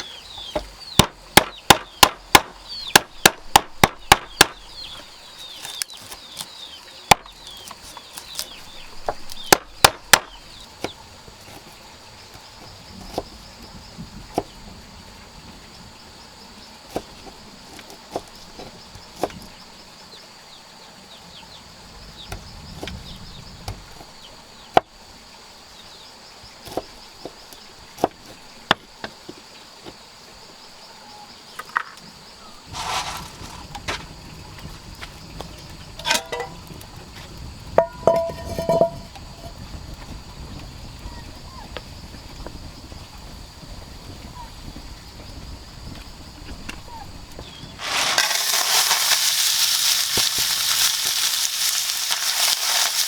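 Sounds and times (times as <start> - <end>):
blade chopping bamboo: 0.6 - 4.7, 5.5 - 11.7.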